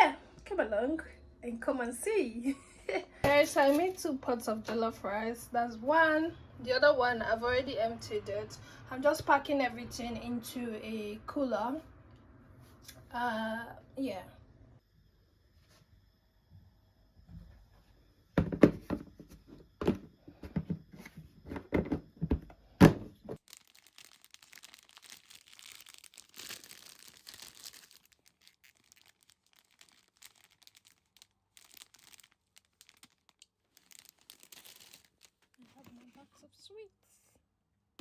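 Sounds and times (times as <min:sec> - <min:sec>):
objects knocking and thudding: 0:18.4 - 0:23.4
faint rustling and crinkling: 0:23.4 - 0:37.5.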